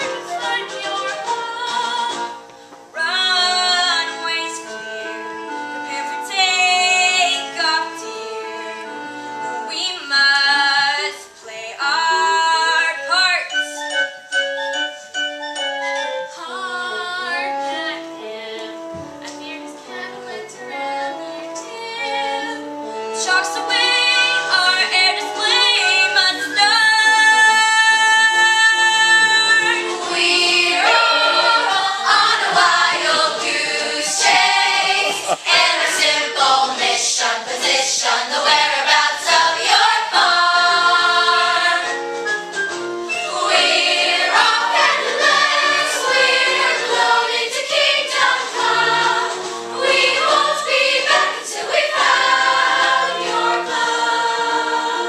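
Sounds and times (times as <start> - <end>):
instrumental accompaniment: 0.0 - 55.0
women's choir singing show tune: 3.0 - 5.3, 16.4 - 42.0, 43.0 - 55.0.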